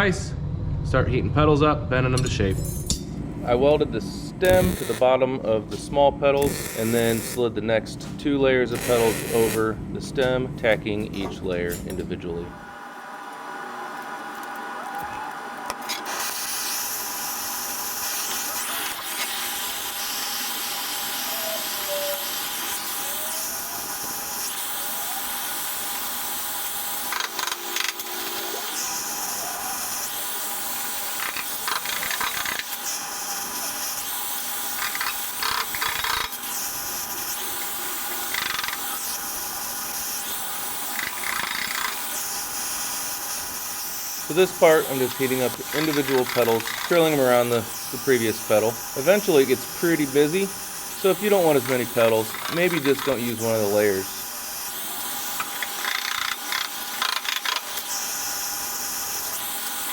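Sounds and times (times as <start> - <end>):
steady metalworking hiss: 36.5 - 56.3.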